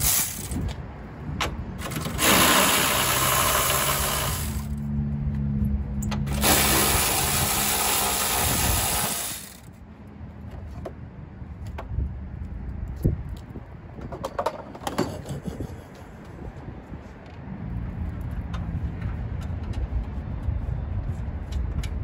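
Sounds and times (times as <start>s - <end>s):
air-powered tool running: 2.1s - 4.8s, 6.3s - 9.7s
exhaust air hissing: 2.1s - 4.8s, 6.3s - 9.7s.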